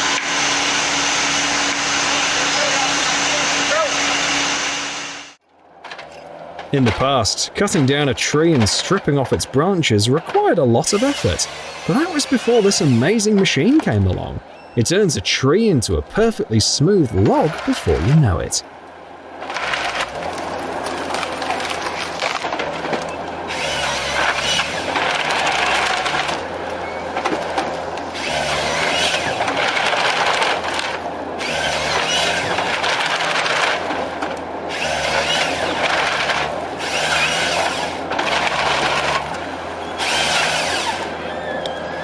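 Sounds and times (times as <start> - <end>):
engine humming: 0.0 - 42.0
wood scraping and tearing: 19.4 - 41.2.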